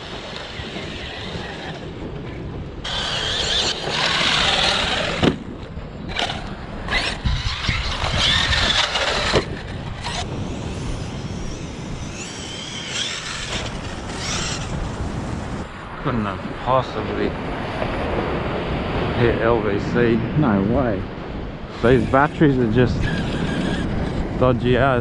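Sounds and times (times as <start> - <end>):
electric motor whining: 0.0 - 2.1, 2.8 - 15.7, 21.7 - 24.3
wind on microphone: 0.0 - 25.0.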